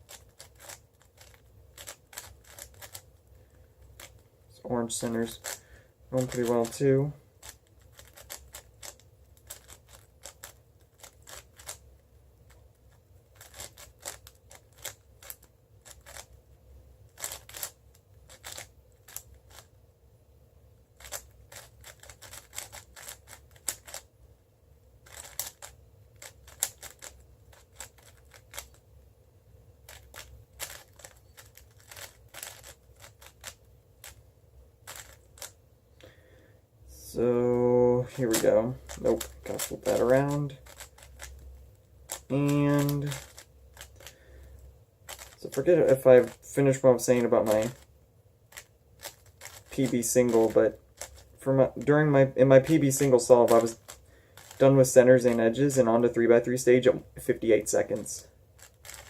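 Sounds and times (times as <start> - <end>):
puzzle cube layers clicking: 0.0 - 3.1, 3.9 - 4.2, 5.0 - 5.6, 6.2 - 11.8, 13.4 - 16.4, 17.1 - 19.7, 21.0 - 24.1, 25.0 - 28.8, 29.9 - 34.2, 34.8 - 35.6, 38.1 - 41.4, 42.1 - 44.1, 45.1 - 47.9, 48.5 - 56.1, 57.7 - 59.0.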